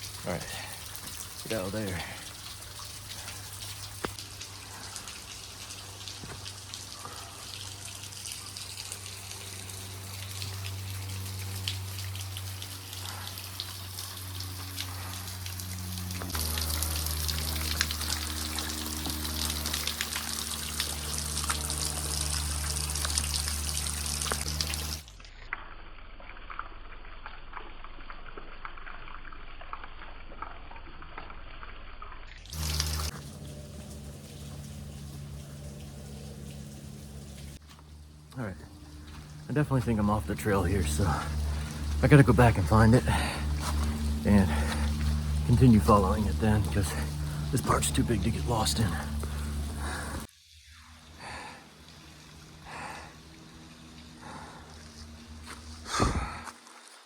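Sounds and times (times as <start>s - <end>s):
waterfall splashing onto rock: 0.0s - 25.2s, 32.5s - 37.5s.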